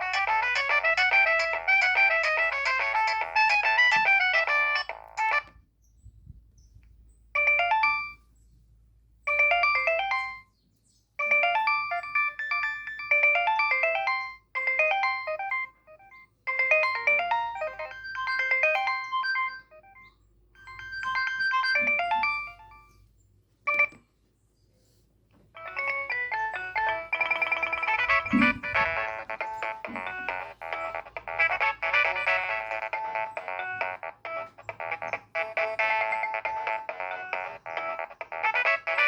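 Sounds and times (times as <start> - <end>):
mobile phone ringtone melody: 0.0 - 5.5, 7.4 - 8.2, 9.3 - 10.5, 11.2 - 23.0, 25.6 - 39.0.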